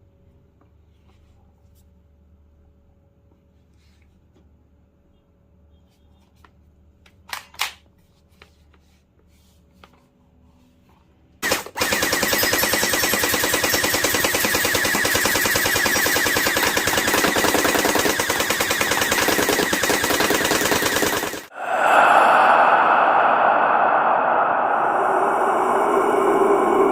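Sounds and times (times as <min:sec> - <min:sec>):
toy blaster rapid firing: 0:11.4 - 0:21.5.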